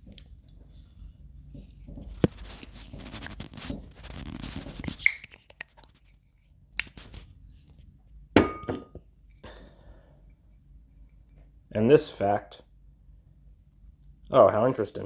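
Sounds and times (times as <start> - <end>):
bottle cap scraping and twisting: 2.5 - 7.2
glass bottle clink: 8.4 - 9.0.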